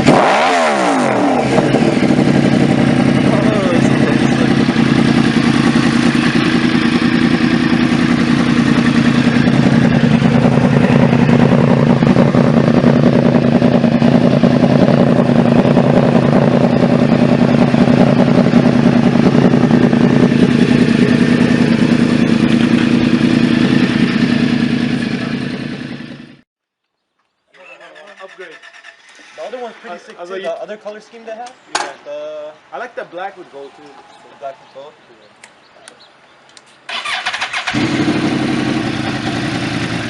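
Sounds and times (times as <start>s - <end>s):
motorcycle engine running steadily: 0.0s - 26.4s, 37.6s - 40.0s.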